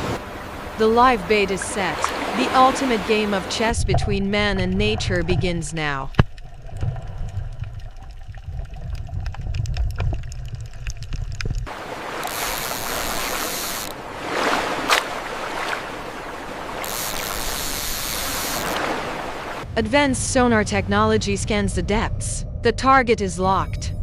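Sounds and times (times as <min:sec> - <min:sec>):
sea water rushing: 0:00.0 - 0:09.6, 0:11.7 - 0:19.7
water splash: 0:01.5 - 0:19.6
low rumble with clicks: 0:03.6 - 0:11.7, 0:19.6 - 0:24.0.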